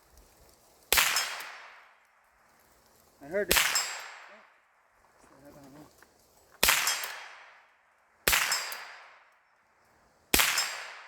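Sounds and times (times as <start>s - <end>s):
gunshot echo: 0.9s - 1.8s, 3.5s - 4.4s, 6.6s - 7.6s, 8.2s - 9.2s, 10.3s - 11.0s
rifle shots: 0.9s - 1.8s, 3.5s - 4.3s, 6.6s - 7.6s, 8.2s - 9.3s, 10.3s - 11.0s.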